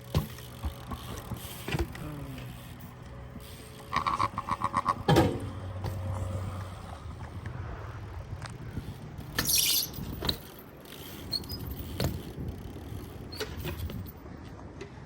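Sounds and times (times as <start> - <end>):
bike tyres rolling rumble: 0.0 - 15.0
small high squeaks: 9.2 - 14.1.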